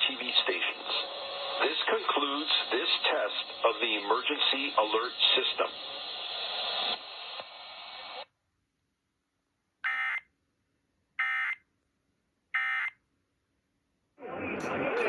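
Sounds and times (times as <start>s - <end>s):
radio hiss: 0.0s - 8.3s, 14.2s - 15.0s.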